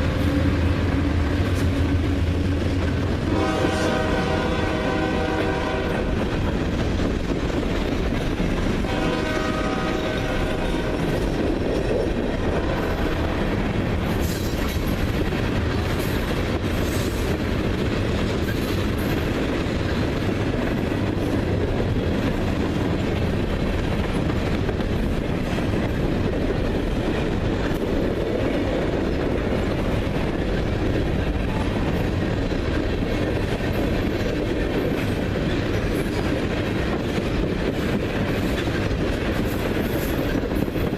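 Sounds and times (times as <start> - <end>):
train wheels rumbling on rail: 0.0 - 40.9
train horn: 3.2 - 6.2, 8.8 - 11.1, 12.5 - 13.4.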